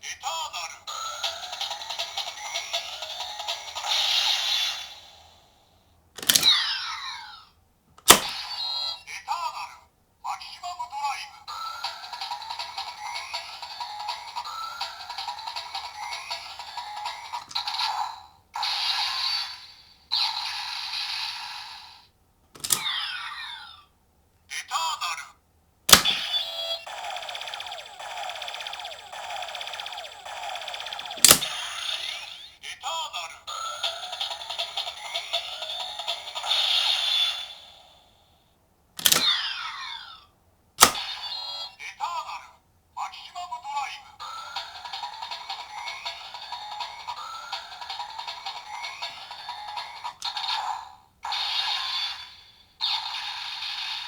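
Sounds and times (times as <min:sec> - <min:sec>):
toy click: 0:00.9 - 0:05.2, 0:06.2 - 0:07.1, 0:08.0 - 0:08.9, 0:11.5 - 0:19.6, 0:22.6 - 0:23.2, 0:25.9 - 0:32.4, 0:33.6 - 0:37.6, 0:39.0 - 0:40.1, 0:40.8 - 0:41.6, 0:44.2 - 0:54.0
toy belt clicks: 0:06.2 - 0:06.8, 0:22.6 - 0:23.2, 0:25.9 - 0:32.3, 0:39.0 - 0:39.6, 0:40.8 - 0:41.2, 0:44.3 - 0:50.6.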